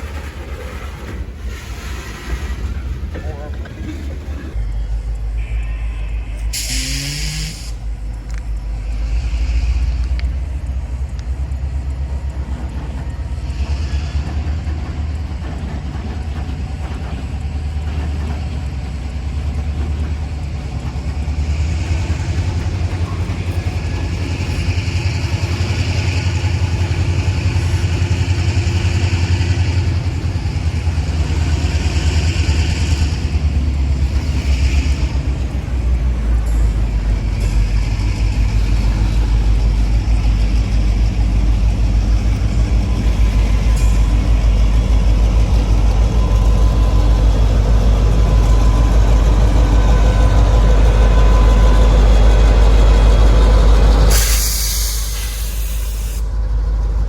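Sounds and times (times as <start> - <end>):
rushing noise of moving train: 0.0 - 57.0
train engine rumble: 0.0 - 57.0.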